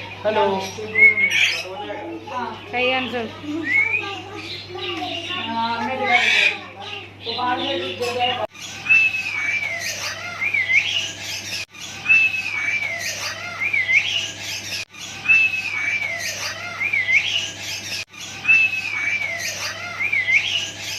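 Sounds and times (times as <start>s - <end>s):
parrot whistling: 8.6s - 20.9s.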